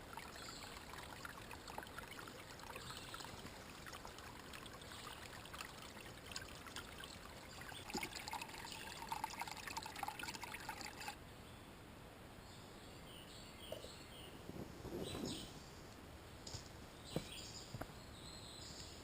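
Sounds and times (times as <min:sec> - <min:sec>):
water trickling and splashing: 0:00.0 - 0:11.2.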